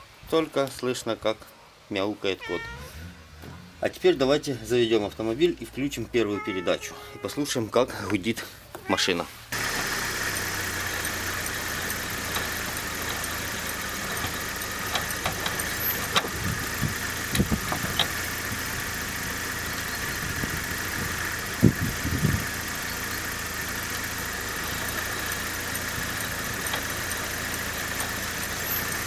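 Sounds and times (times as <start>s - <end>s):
car engine running: 9.5s - 29.0s
wheel spinning with steady hum: 9.5s - 29.0s.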